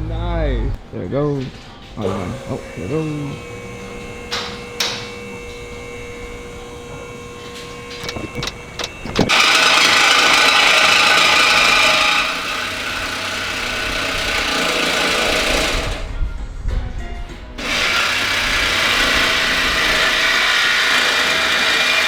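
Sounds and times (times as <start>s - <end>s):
clicks: 3.4s - 9.4s.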